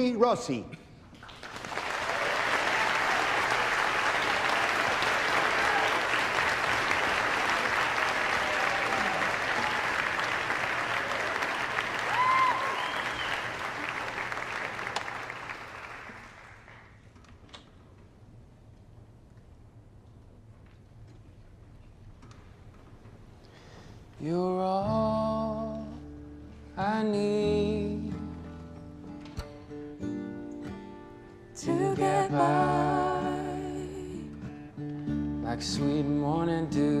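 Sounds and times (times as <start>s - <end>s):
audience applauding: 1.2s - 17.1s.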